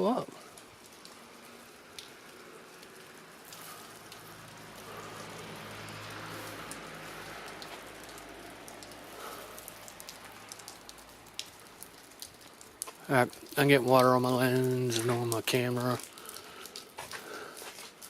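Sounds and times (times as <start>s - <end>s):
raindrops ticking: 0.0s - 18.0s
steady rain: 0.0s - 18.0s
low engine hum: 0.3s - 12.0s.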